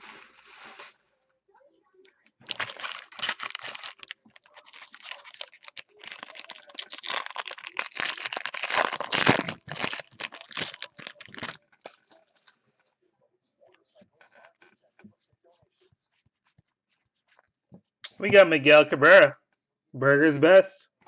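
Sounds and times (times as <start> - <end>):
wrapper crinkling and tearing: 0.0 - 1.0, 2.4 - 12.2.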